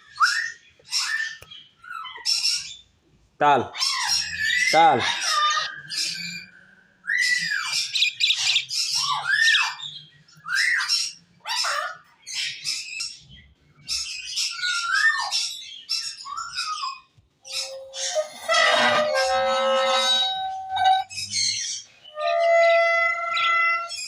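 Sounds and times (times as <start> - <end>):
parrot squawking: 3.7 - 6.4, 7.1 - 9.8, 10.5 - 12.8, 14.5 - 24.0
parrot whistle rising and falling: 17.5 - 21.5.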